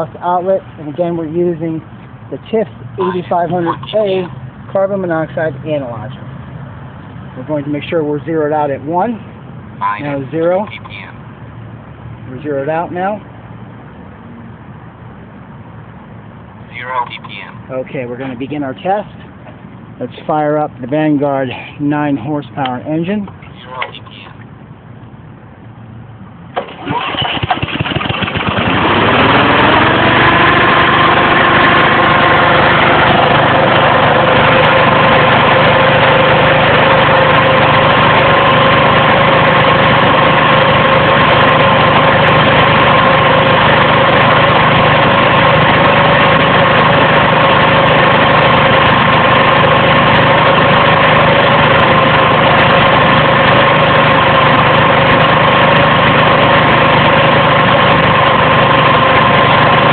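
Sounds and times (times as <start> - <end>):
fan engine running: 0.0 - 11.2, 26.5 - 59.9.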